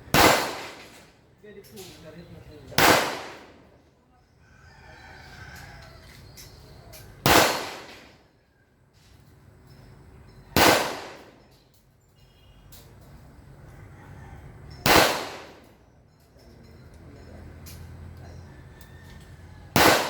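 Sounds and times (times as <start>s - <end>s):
gunshots: 0.1s - 1.0s, 2.8s - 3.6s, 7.2s - 8.2s, 10.6s - 11.4s, 14.8s - 15.7s, 19.7s - 20.0s.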